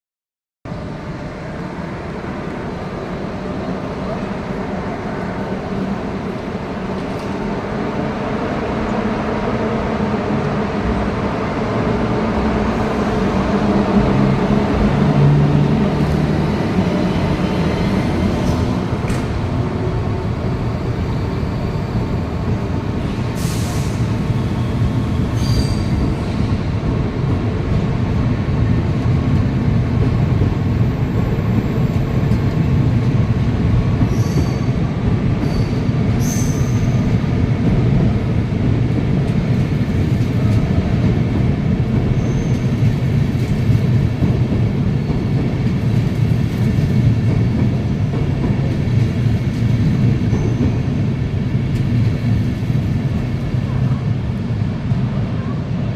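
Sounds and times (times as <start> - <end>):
train rail rumble: 0.7 - 55.9
wheel squeal: 25.3 - 26.0, 35.4 - 37.0, 42.2 - 42.7.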